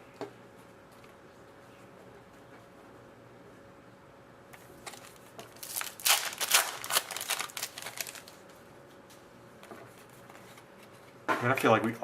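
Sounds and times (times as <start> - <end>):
cards rustling and flicking: 4.8 - 8.4.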